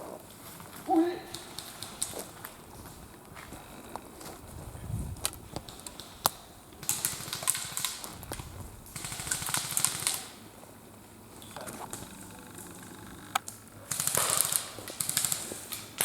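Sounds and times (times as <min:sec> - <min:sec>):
rustling dry brush underfoot: 0:00.0 - 0:09.5.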